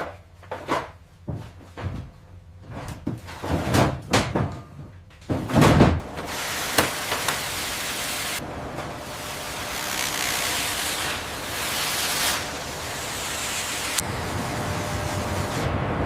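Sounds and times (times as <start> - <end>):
steady hissing noise: 6.1 - 15.7.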